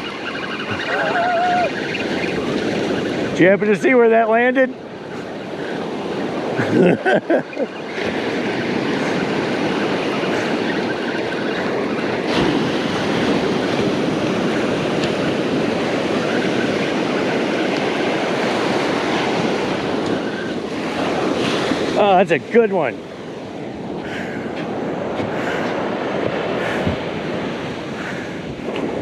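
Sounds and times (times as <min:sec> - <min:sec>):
ocean surf washing: 0:00.0 - 0:29.0
wind on microphone: 0:04.8 - 0:22.1, 0:22.8 - 0:29.0.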